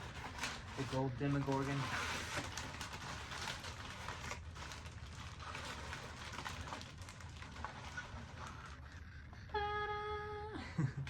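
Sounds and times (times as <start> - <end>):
packing material rustling: 0.0 - 8.8.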